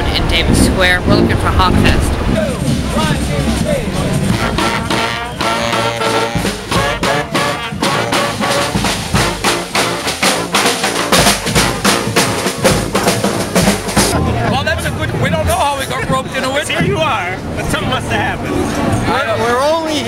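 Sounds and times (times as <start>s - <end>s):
bass drum: 0.0s - 17.8s
brass horns playing: 0.2s - 14.4s
snare drum strokes: 2.6s - 14.2s.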